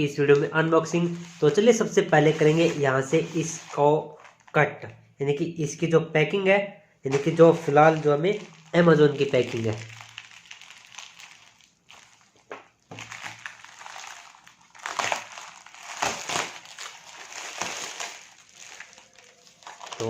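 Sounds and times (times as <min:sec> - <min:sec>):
packaging being torn open: 0:07.9 - 0:20.0.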